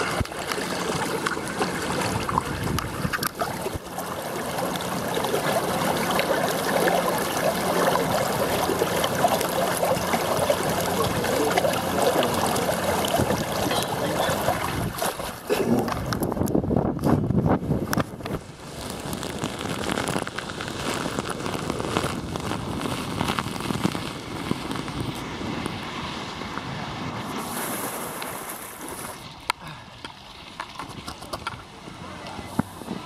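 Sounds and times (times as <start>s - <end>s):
rushing splashing water: 0.0s - 16.3s
wind noise on microphone: 0.0s - 29.4s.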